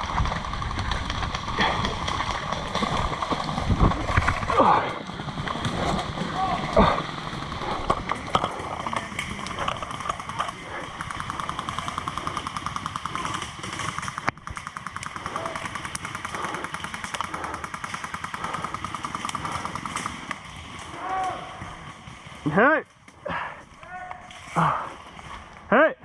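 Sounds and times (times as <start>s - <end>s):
airsoft guns firing full auto: 5.1s - 22.5s.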